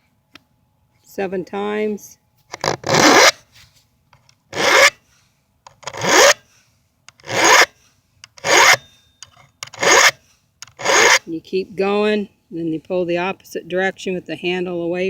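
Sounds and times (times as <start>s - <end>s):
file rasping on chainsaw chain: 2.6s - 3.4s, 4.5s - 5.0s, 5.8s - 6.4s, 7.2s - 7.8s, 8.4s - 8.9s, 9.7s - 11.2s.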